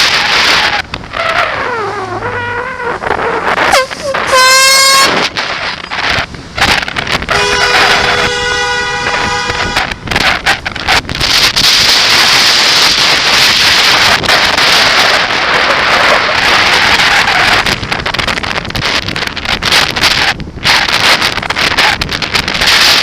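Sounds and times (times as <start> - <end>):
wind rushing over microphone: 0.0 - 23.0
horn blast: 3.6 - 5.4, 7.3 - 10.0.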